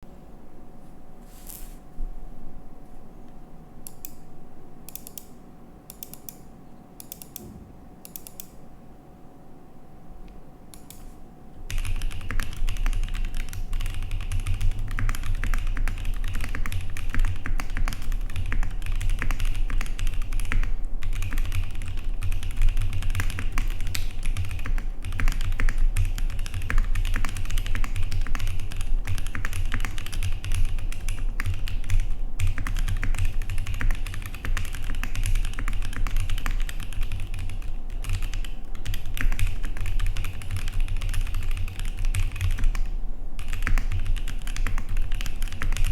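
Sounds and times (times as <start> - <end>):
mechanical keyboard typing: 4.9 - 5.3, 7.0 - 8.6, 11.7 - 45.9.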